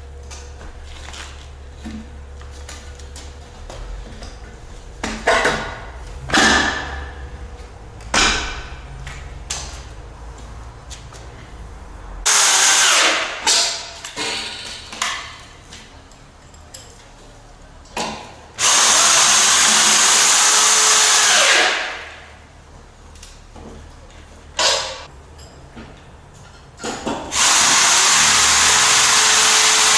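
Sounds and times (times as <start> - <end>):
power drill running: 12.3 - 13.4, 18.6 - 22.1, 27.3 - 29.9.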